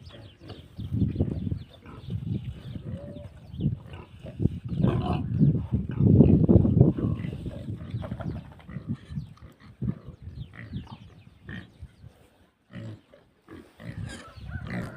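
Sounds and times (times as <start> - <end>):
pigs grunting: 0.0 - 11.9, 12.6 - 14.9.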